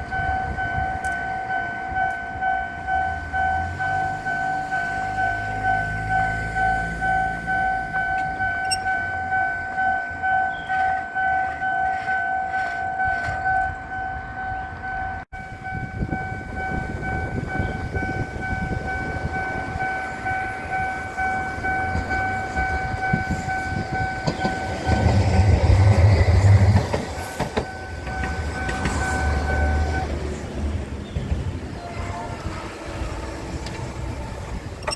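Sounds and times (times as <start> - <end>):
level crossing bell ringing: 0.0 - 24.8
train rumbling: 0.0 - 34.9.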